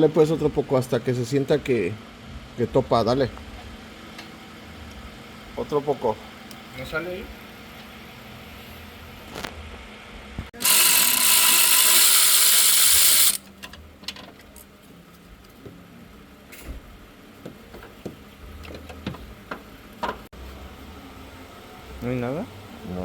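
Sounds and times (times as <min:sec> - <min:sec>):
air tool hissing whir: 0:10.6 - 0:13.4.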